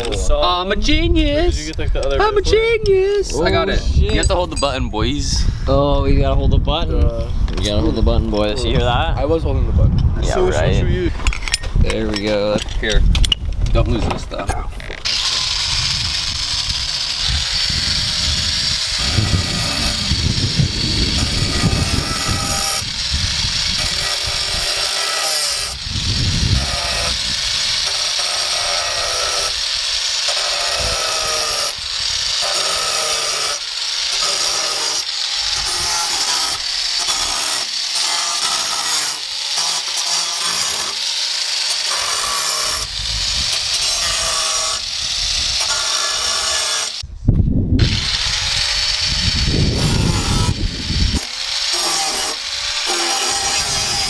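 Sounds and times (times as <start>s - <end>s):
electric power saw cutting: 11.2s - 47.0s, 47.8s - 54.0s.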